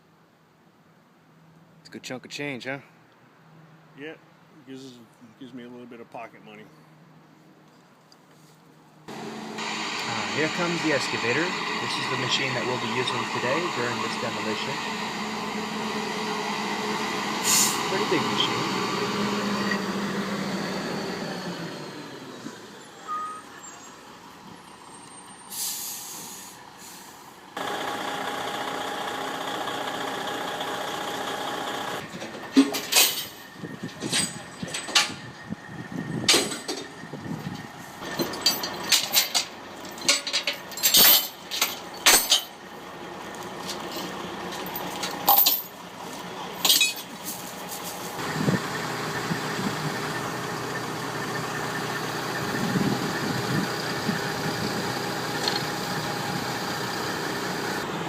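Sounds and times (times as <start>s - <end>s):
truck engine: 9.1s - 58.0s
air-brake hiss: 17.4s - 18.0s, 25.4s - 27.4s
metallic clanks and knocks: 32.1s - 35.2s, 36.2s - 37.0s, 38.0s - 42.6s.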